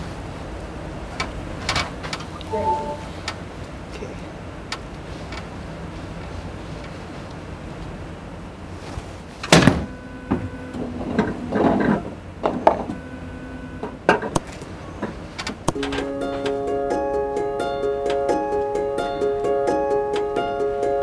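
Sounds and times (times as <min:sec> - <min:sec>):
plucked string music: 0:15.8 - 0:21.0.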